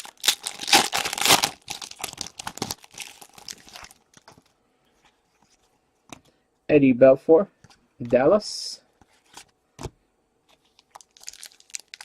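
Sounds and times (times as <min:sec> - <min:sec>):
foil wrapper tearing and crinkling: 0:00.0 - 0:04.3, 0:10.6 - 0:12.0.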